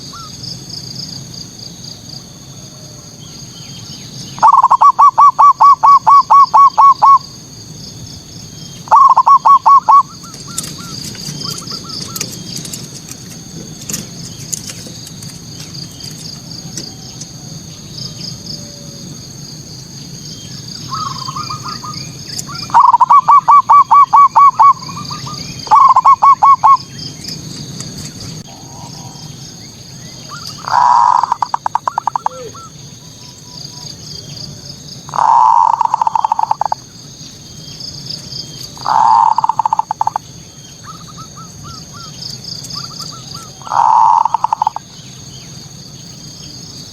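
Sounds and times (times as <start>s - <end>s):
dove cooing: 4.4s - 7.3s, 8.9s - 12.8s, 20.8s - 26.9s, 28.4s - 32.9s, 33.7s - 36.8s, 38.7s - 40.2s, 42.8s - 44.9s
high-pitched chirring: 22.7s - 25.0s, 25.6s - 26.8s, 30.3s - 32.6s.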